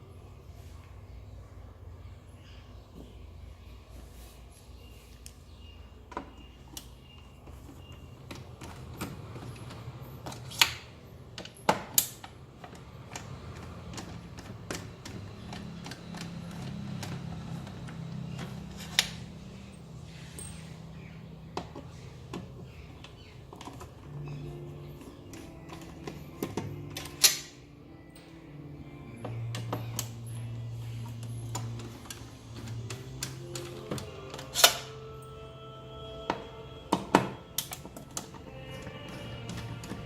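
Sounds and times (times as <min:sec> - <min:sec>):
plastic and metal parts clicking: 0:07.6 - 0:19.4.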